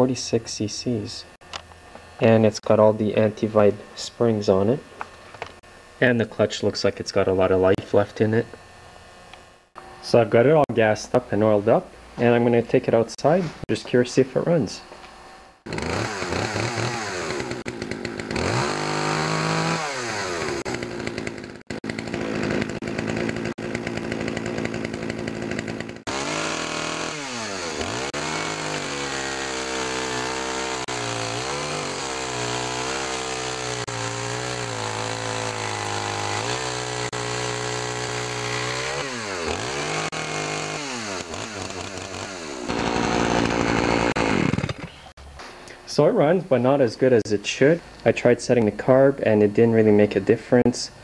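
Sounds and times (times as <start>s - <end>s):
chainsaw engine revving: 15.6s - 45.0s.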